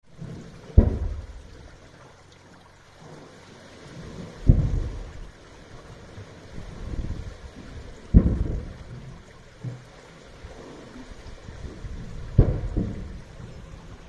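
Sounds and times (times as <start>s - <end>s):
water rumbling and sloshing: 0.0s - 14.0s
waves booming in a pipe: 0.1s - 1.7s, 3.0s - 5.3s, 5.9s - 9.8s, 10.4s - 14.0s.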